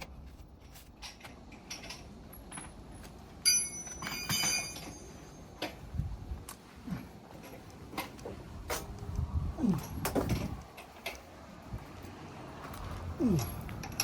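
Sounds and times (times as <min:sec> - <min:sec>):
small metal objects clinking: 0:01.7 - 0:05.7.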